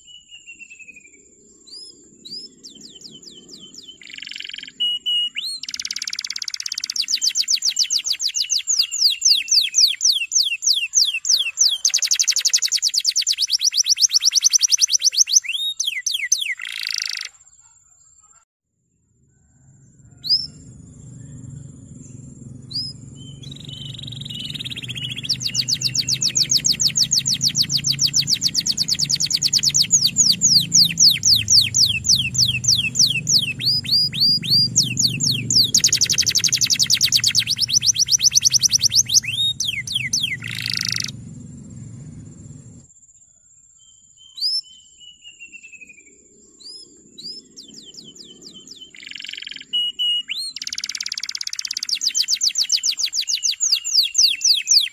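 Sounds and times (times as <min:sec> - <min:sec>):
canary singing trills: 0:00.0 - 0:18.4, 0:19.5 - 0:42.8, 0:43.8 - 0:54.9
low steady hum: 0:19.1 - 0:42.8.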